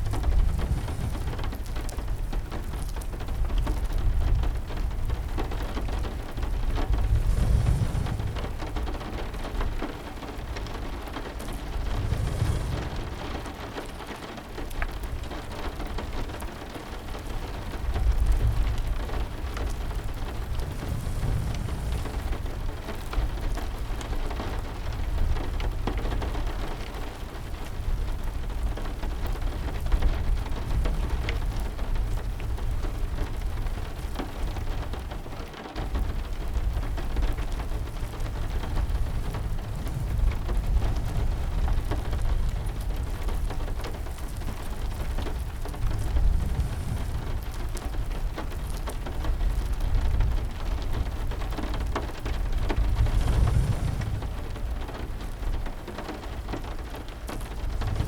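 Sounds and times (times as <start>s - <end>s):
deep rumble: 0.0s - 15.4s, 17.7s - 26.0s, 35.8s - 58.0s
heavy rain: 0.0s - 58.0s
wood fire crackling: 0.0s - 58.0s.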